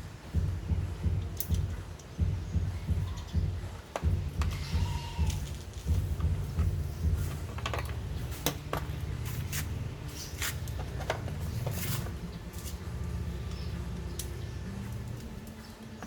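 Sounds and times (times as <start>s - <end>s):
steady low hum: 0.0s - 16.0s
small parts and hand tools clicking: 0.3s - 9.5s, 13.5s - 16.0s.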